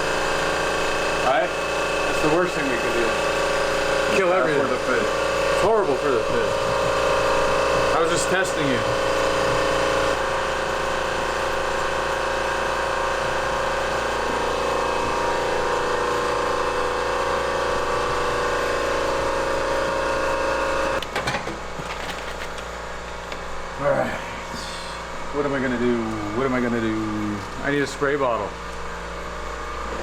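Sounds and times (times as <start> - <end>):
power tool motor whining: 0.0 - 21.0.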